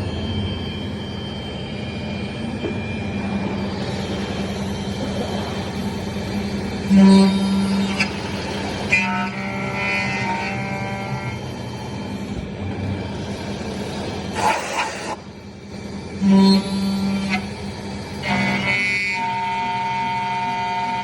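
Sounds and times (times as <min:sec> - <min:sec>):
high machine whine: 0:00.0 - 0:21.0
router motor hum: 0:03.2 - 0:19.9.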